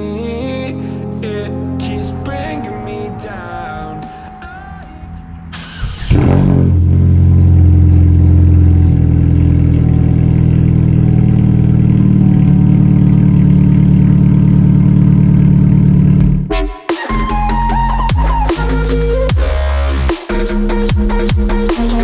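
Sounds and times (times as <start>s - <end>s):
car engine running loudly: 3.3s - 16.2s.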